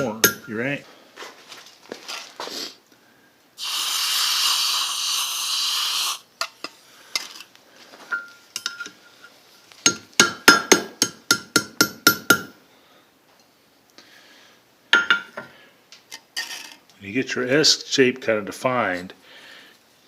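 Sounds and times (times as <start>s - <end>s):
hot steel hissing in water: 3.6s - 6.3s.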